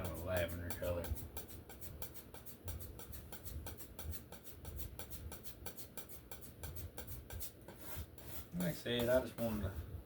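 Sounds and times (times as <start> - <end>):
palette knife scraping and tapping: 0.0 - 9.6.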